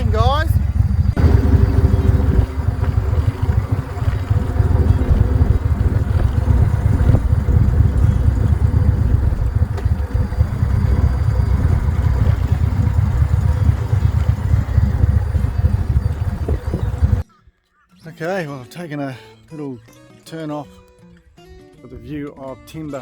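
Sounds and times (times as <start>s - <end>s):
motorcycle engine rumbling: 0.0s - 17.2s.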